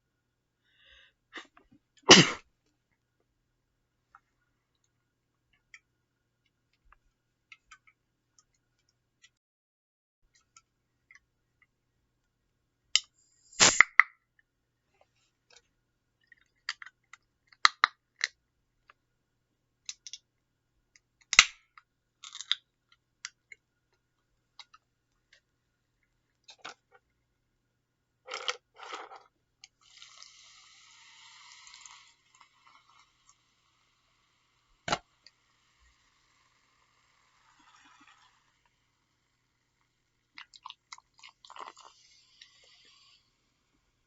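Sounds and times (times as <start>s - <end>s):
soft steady hiss: 14.4s - 44.0s
person sipping and swallowing: 40.4s - 43.2s.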